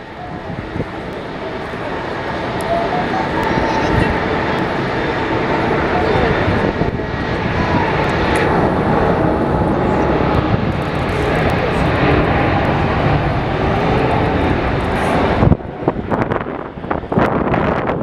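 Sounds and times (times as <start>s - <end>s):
whine tones sliding in pitch: 0.0s - 10.0s
jet engines roaring: 0.0s - 18.0s.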